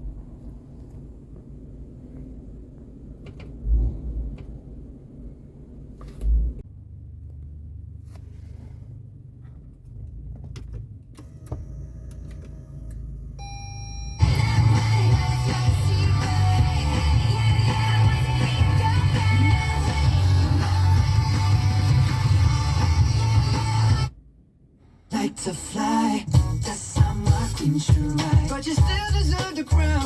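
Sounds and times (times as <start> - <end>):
low steady rumble: 0.0 - 30.0
loud music with singing: 14.2 - 24.1, 25.2 - 30.0.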